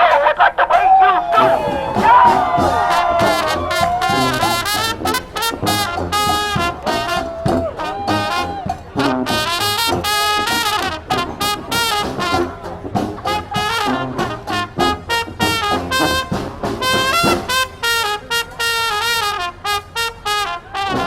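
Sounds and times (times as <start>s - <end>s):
brass marching band playing: 1.3s - 21.0s
drum hits: 1.4s - 17.7s.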